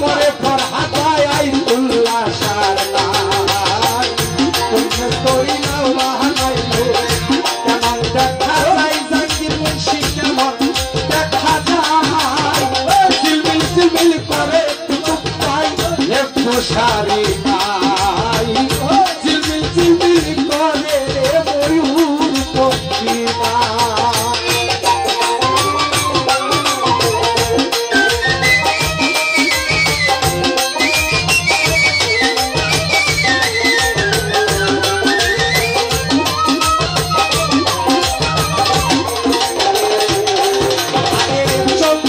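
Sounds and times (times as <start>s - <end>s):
hand drum: 0.0s - 42.0s
wavering folk melody: 23.1s - 42.0s.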